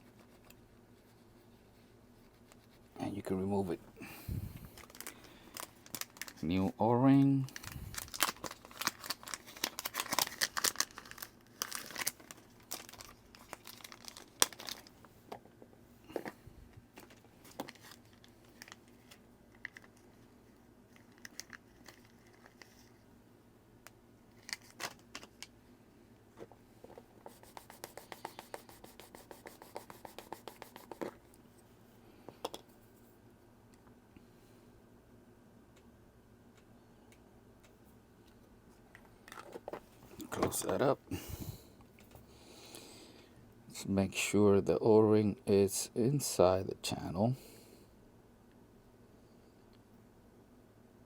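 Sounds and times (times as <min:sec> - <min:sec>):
crinkling: 0:04.6 - 0:06.8, 0:07.4 - 0:15.2, 0:16.1 - 0:20.3.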